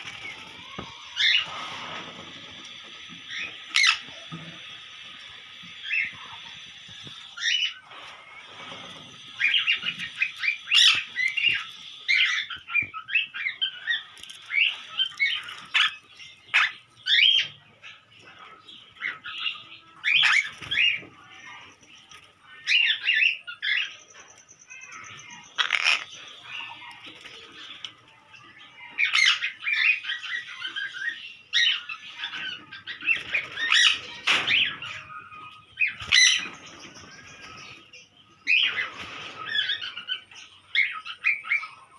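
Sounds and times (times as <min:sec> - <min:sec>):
background bird chatter: 0:00.0 - 0:41.9
parrots squawking: 0:03.2 - 0:04.2, 0:09.2 - 0:17.6, 0:25.3 - 0:27.0, 0:29.0 - 0:35.1.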